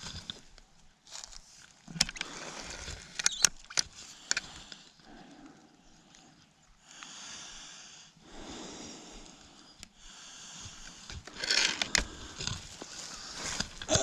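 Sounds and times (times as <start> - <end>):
person breathing heavily: 6.8 - 14.0.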